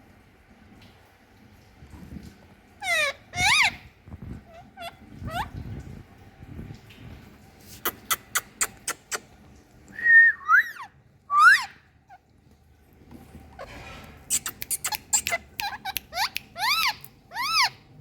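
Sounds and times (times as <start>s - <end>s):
parrot whistling: 10.0s - 11.8s, 14.3s - 17.7s
parrot clicking: 14.3s - 17.6s.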